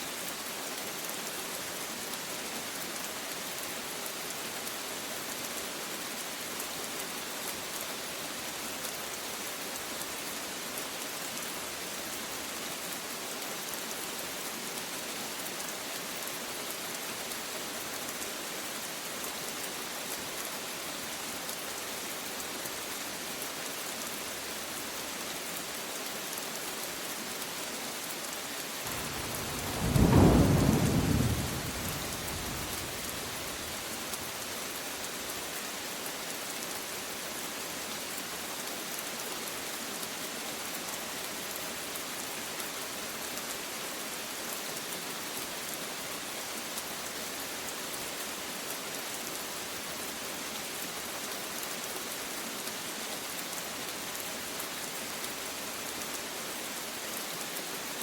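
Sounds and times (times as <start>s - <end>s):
steady rain falling: 0.0s - 58.0s
thunder peal: 28.9s - 33.8s.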